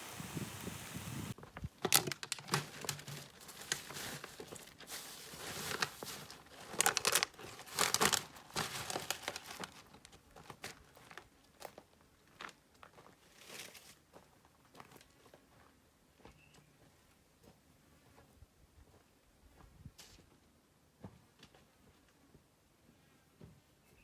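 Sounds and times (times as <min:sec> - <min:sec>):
crinkling and crackling: 0:01.3 - 0:14.0.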